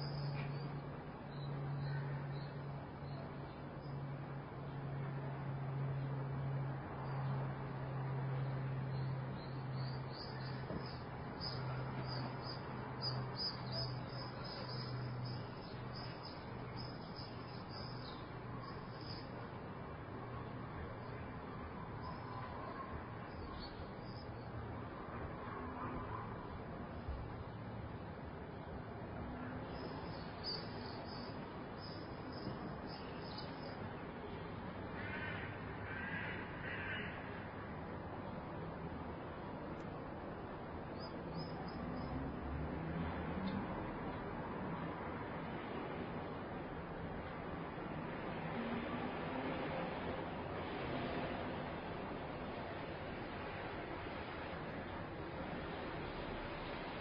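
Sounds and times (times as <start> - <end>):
city ambience hush: 0.0 - 57.0
distant background noise: 0.0 - 57.0
small birds chirping: 9.0 - 19.4, 29.7 - 33.8
bird cawing: 35.0 - 37.2.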